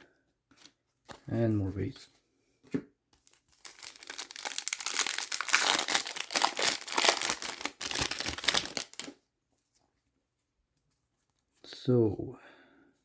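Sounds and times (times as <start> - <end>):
foil wrapper crinkling: 3.2 - 9.2.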